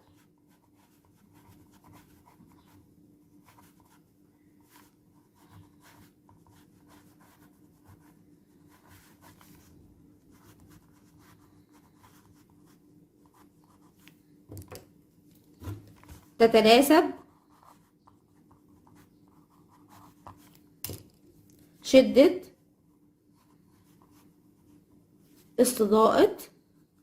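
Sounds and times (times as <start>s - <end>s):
low steady hum: 0.0s - 27.0s
pen scratching while writing: 4.6s - 9.7s.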